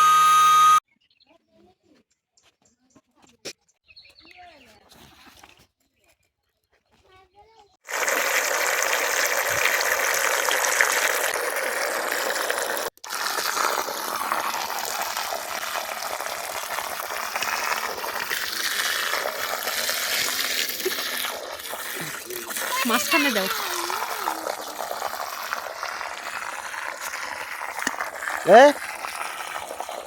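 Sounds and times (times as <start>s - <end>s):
water rushing and splashing: 7.9s - 30.0s.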